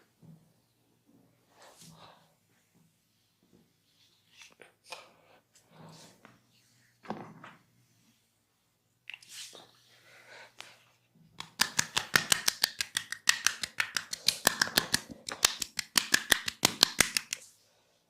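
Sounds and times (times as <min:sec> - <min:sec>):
hands making snapping cracks: 0:11.4 - 0:17.5.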